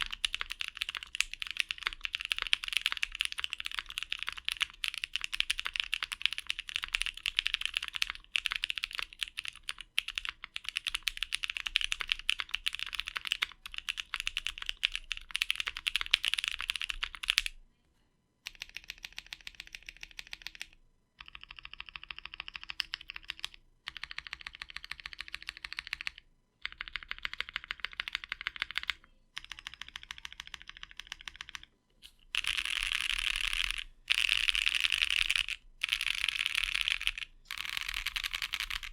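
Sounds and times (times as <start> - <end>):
mechanical keyboard typing: 0.0 - 17.6, 18.4 - 31.7, 32.3 - 38.9.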